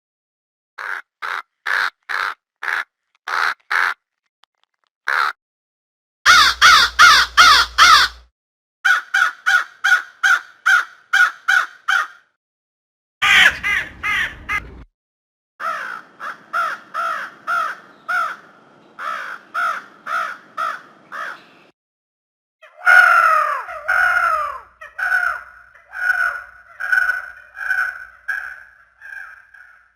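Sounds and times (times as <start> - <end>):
crows cawing: 0.8 - 4.0, 5.1 - 5.4, 6.3 - 8.2, 8.9 - 12.4, 13.2 - 14.6, 15.6 - 21.7, 22.6 - 29.9.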